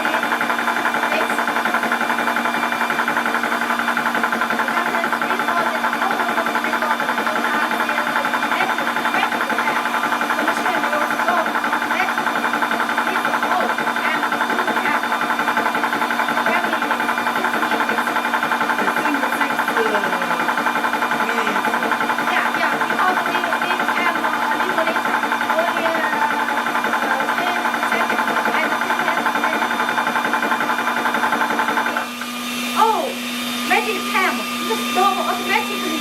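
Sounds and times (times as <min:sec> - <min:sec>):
air compressor running: 0:00.0 - 0:36.0.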